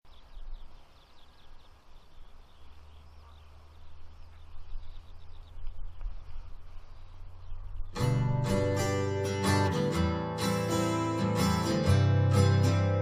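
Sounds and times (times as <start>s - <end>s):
low steady rumble: 0.1s - 10.3s
skylark song chirps and trills: 0.1s - 13.0s.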